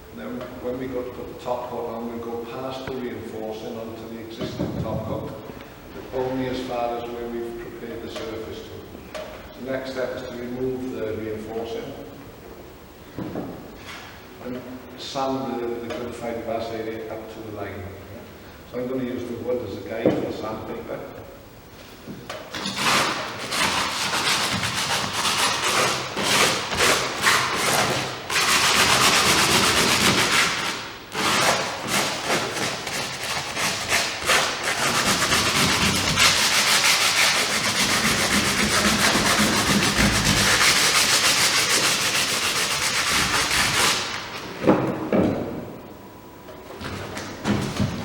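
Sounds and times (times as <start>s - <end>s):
sandpaper rasping on fibreglass: 22.6s - 44.1s.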